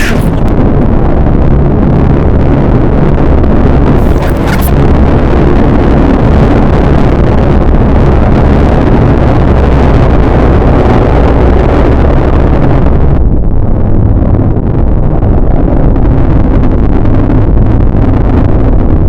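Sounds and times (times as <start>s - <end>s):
distorted electronic noise: 0.0s - 0.6s, 4.0s - 4.9s.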